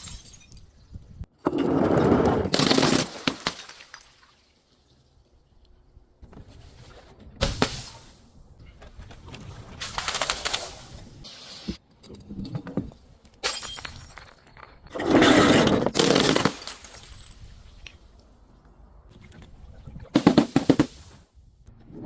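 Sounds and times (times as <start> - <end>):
glass crunching and grinding: 13.4 - 17.5
glass cracking: 15.9 - 17.4.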